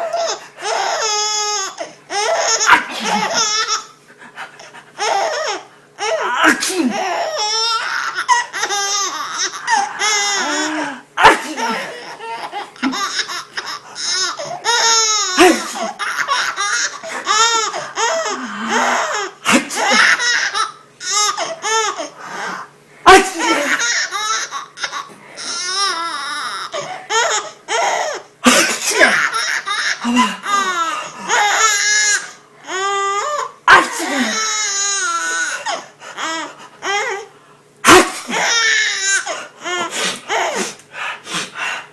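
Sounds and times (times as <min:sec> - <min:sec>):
baby laughing: 0:00.0 - 0:22.1, 0:23.1 - 0:37.2
man sneezing: 0:02.4 - 0:03.4, 0:06.4 - 0:07.1, 0:10.4 - 0:12.1, 0:15.3 - 0:16.0, 0:18.4 - 0:20.2, 0:23.0 - 0:23.9, 0:28.4 - 0:29.4, 0:30.0 - 0:31.3, 0:33.7 - 0:34.5, 0:37.8 - 0:38.6, 0:39.8 - 0:41.6.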